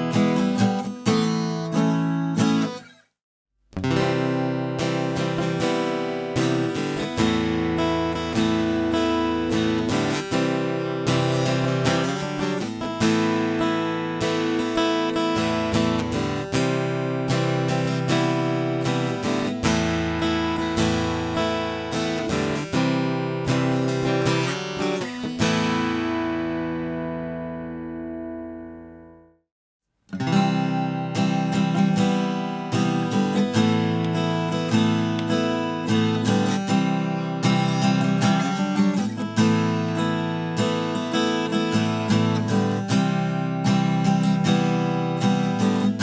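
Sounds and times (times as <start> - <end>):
acoustic guitar chords: 0.0 - 3.0, 3.7 - 29.4, 30.1 - 46.0.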